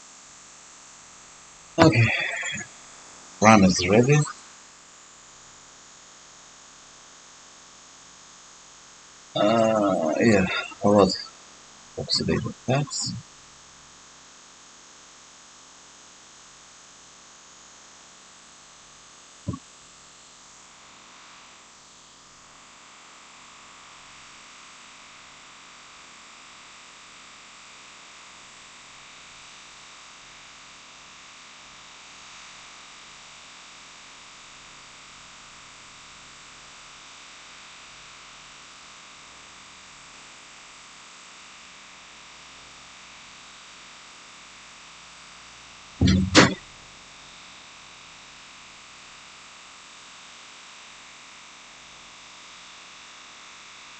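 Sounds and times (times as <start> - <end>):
short click: 46.0 - 46.6.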